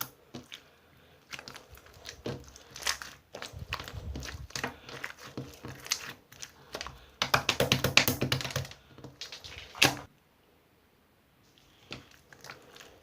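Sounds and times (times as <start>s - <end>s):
slime squished by hand: 0.0s - 10.1s.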